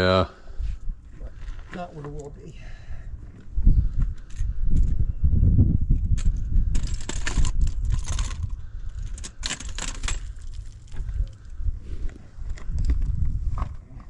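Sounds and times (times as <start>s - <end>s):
metal crutches clinking on rock: 6.1s - 11.4s.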